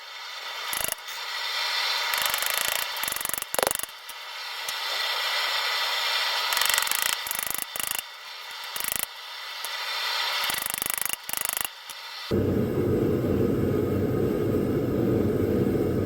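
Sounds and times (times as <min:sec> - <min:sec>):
mechanical rasping with rattle: 0:00.6 - 0:01.1, 0:02.1 - 0:04.2, 0:06.4 - 0:09.1, 0:10.4 - 0:12.0.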